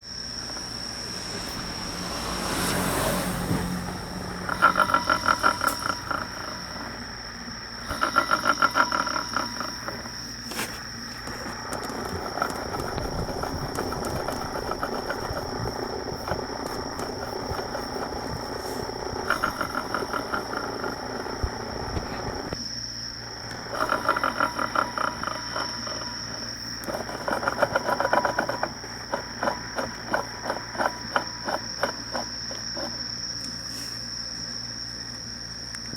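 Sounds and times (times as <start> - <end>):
needle bearing clicking rattle: 4.4 - 7.0, 7.8 - 22.6, 23.7 - 33.0.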